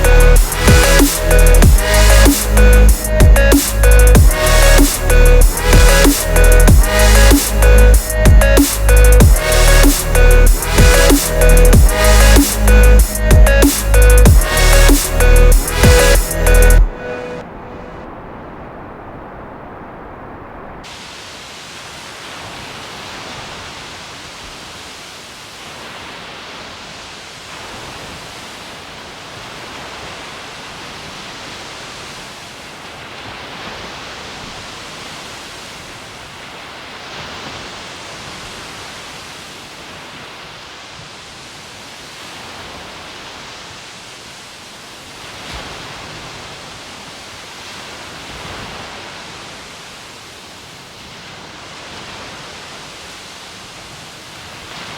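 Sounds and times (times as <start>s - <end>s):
low thumps: 0.0s - 16.9s
waves breaking: 0.0s - 54.9s.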